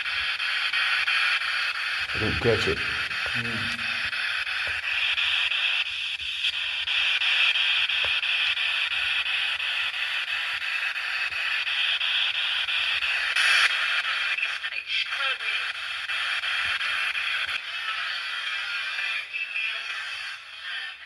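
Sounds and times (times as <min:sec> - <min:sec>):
radio static hiss: 0:02.0 - 0:04.4.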